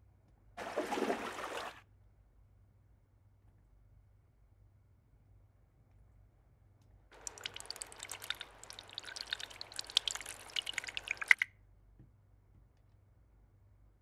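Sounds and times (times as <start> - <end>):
water splashing and trickling: 0.6 - 1.8, 7.2 - 11.5.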